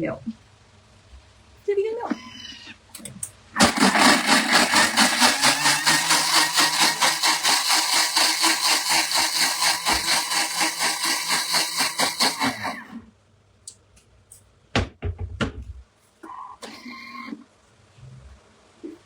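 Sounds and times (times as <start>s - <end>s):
blender motor pulsing: 3.6s - 13.0s.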